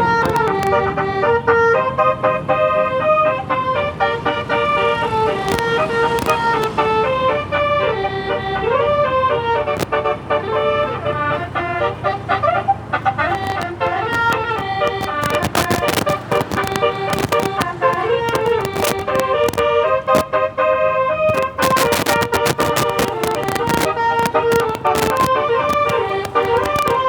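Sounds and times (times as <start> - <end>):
musical air horn tune: 0.0 - 27.0.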